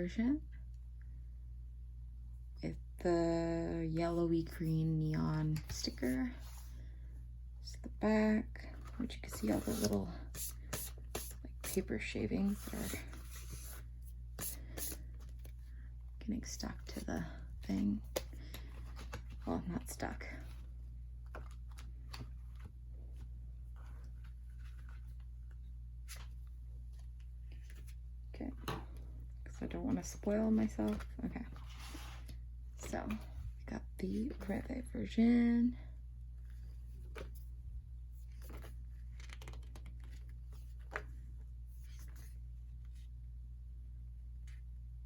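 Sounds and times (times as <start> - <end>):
low electrical hum: 0.0 - 45.0
paper and cardboard rustling: 8.7 - 11.8, 20.3 - 28.0, 29.9 - 33.3.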